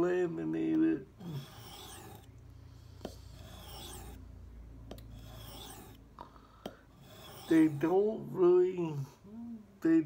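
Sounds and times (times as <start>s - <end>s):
knife rasping on whetstone: 1.2s - 2.3s, 2.9s - 4.2s, 5.1s - 6.0s, 6.9s - 8.2s.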